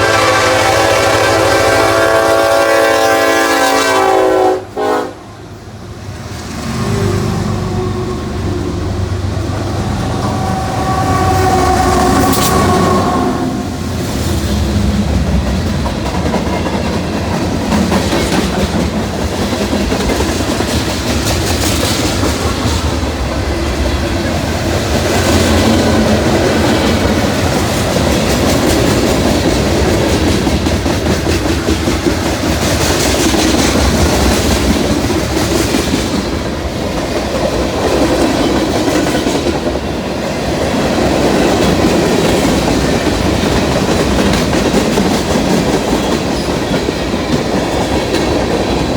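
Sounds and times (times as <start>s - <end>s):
freight train wheels clattering: 13.7s - 48.9s.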